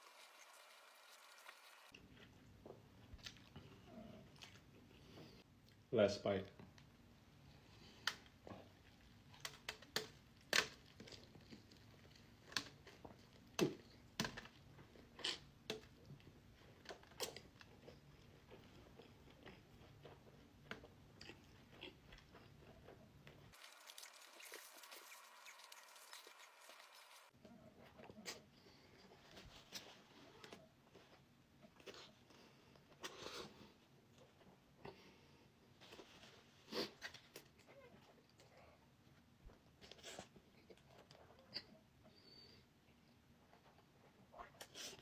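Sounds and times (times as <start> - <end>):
person chewing food: 1.9 - 5.8, 7.7 - 35.2.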